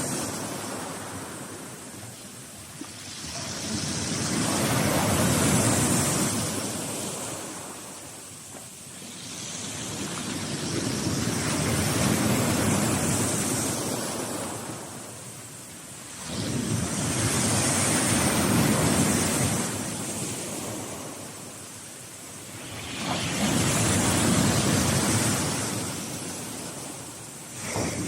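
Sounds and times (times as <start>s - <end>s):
waves breaking on shore: 0.0s - 28.0s.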